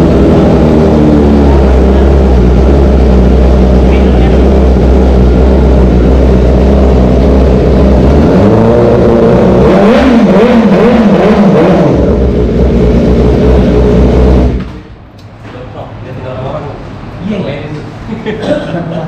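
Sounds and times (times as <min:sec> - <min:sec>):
motorcycle engine idling and revving: 0:00.0 - 0:15.0.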